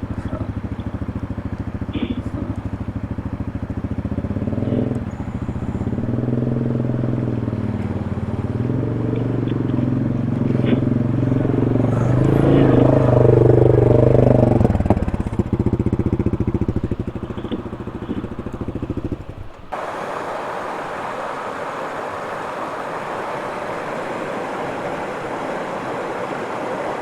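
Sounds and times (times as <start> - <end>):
atv engine revving and idling: 0.0 - 19.9
creek water rushing: 0.0 - 27.0.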